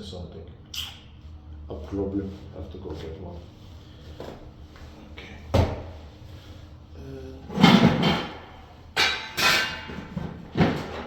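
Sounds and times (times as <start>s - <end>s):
objects knocking: 9.0s - 11.0s.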